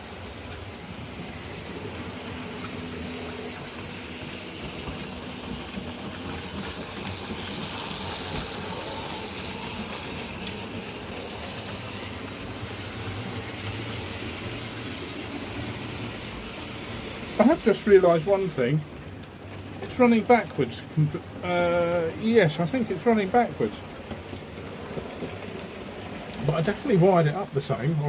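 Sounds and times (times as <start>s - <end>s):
wheels clicking over rail joint: 0.0s - 21.0s
model train motor hum: 0.0s - 28.0s.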